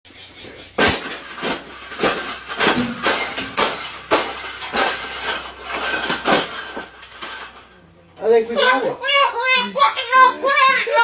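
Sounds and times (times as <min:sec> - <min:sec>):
sharp bangs and rattles: 0:00.1 - 0:07.7.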